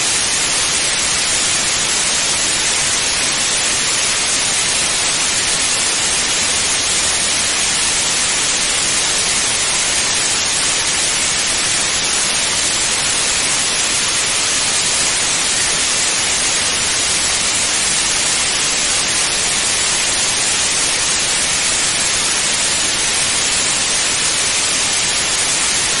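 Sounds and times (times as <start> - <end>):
television static hiss: 0.0 - 26.0.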